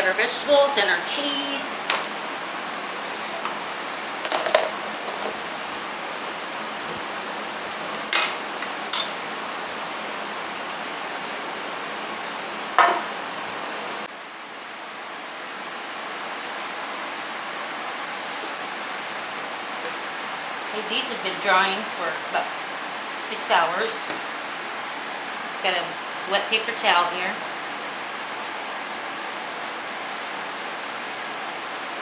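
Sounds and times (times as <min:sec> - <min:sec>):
kitchen utensils and dishes clinking: 0:07.9 - 0:09.5, 0:12.8 - 0:13.1.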